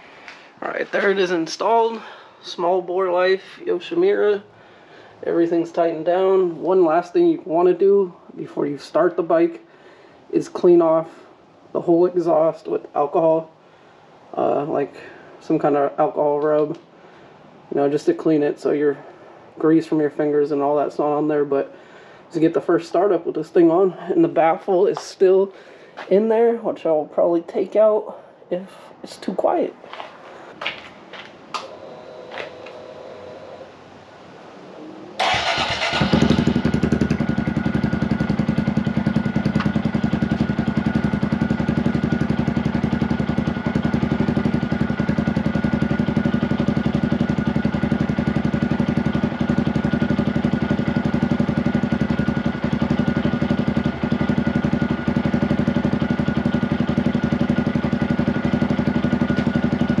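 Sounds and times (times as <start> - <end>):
motorcycle engine starting and idling: 35.2 - 60.0.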